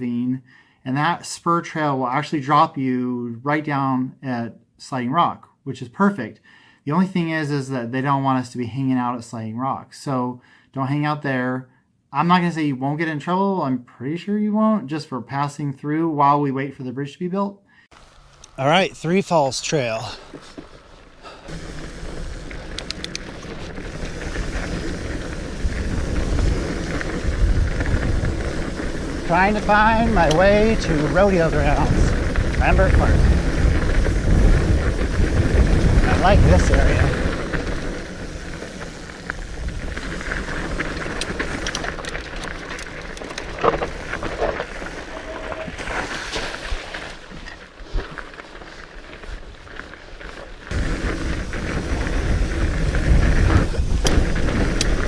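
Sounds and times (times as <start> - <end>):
bike tyres rolling on dirt: 17.9 - 55.0
wind buffeting microphone: 21.5 - 45.9, 50.7 - 55.0
sharp clicks: 22.7 - 23.5.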